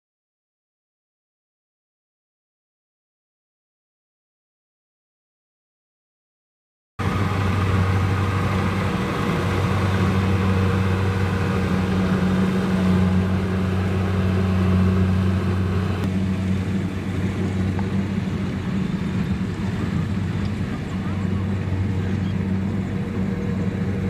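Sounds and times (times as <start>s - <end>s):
diesel engine droning: 7.0s - 24.0s
high machinery noise: 7.0s - 24.0s.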